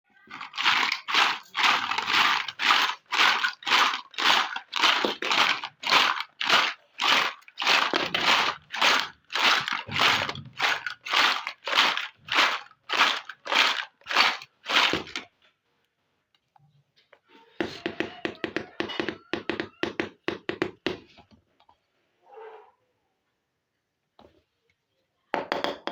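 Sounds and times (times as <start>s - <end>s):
crunchy crinkling strokes: 0.2s - 15.3s.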